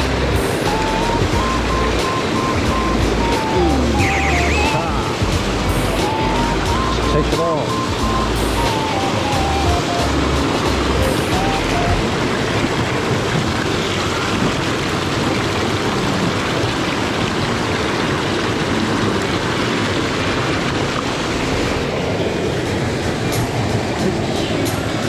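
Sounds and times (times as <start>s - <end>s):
stream water rushing: 0.0s - 25.0s.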